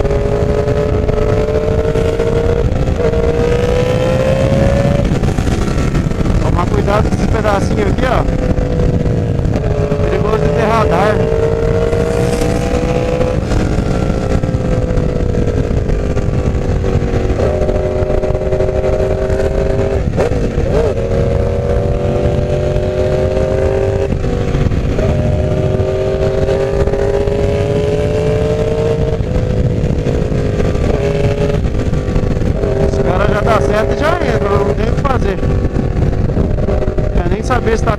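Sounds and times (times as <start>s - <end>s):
motorcycle engine running: 0.0s - 37.9s
wind and road noise: 0.0s - 37.9s.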